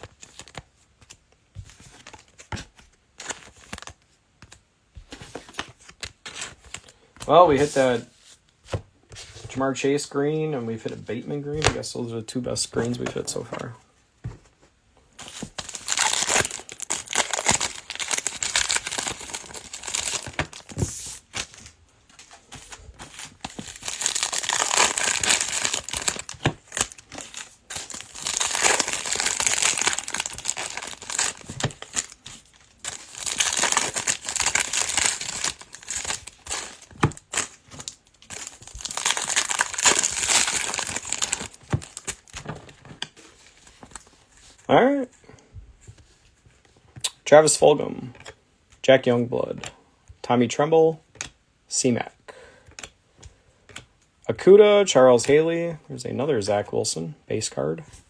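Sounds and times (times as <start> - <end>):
card pack wrappers crinkling: 6.3 - 8.1, 15.2 - 43.0.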